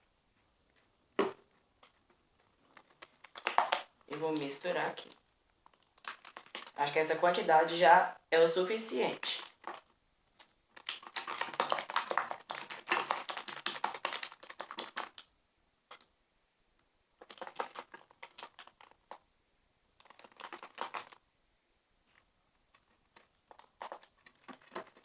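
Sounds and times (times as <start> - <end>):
slime stirred with sticky clicks: 5.0 - 6.8, 9.3 - 15.3.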